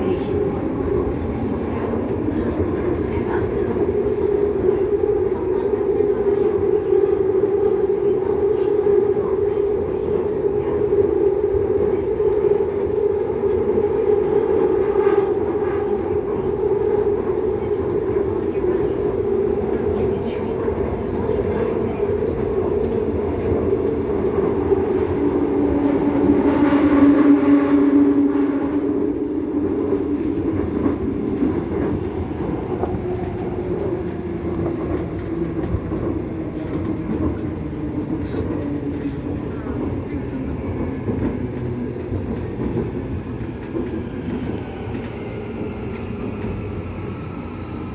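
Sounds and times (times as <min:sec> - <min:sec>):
rumble of train wheels on rail: 0:00.0 - 0:47.9.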